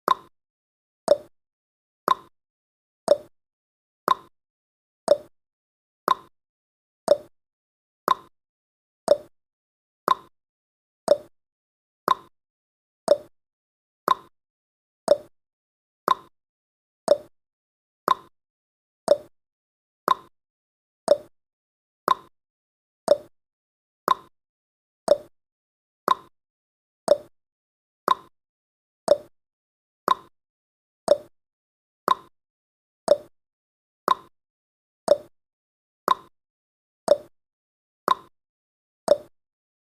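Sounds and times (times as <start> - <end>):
clock ticking: 29.1 - 29.3, 39.1 - 39.3.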